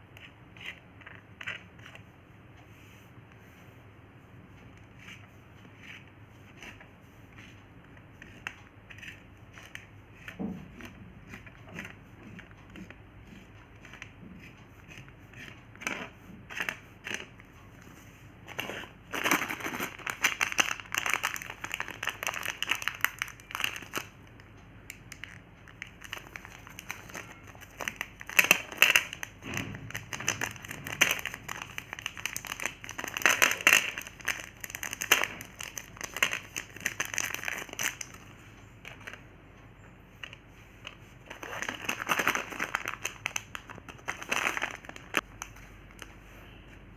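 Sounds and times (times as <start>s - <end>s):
plastic packet crinkling: 18.5s - 24.1s, 25.1s - 29.3s, 29.9s - 38.2s, 41.3s - 46.0s.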